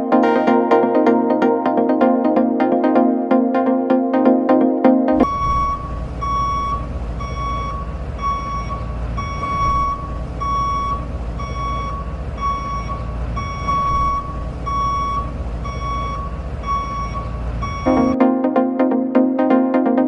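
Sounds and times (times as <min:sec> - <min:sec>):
vehicle reversing alarm beeping: 0:05.2 - 0:18.2.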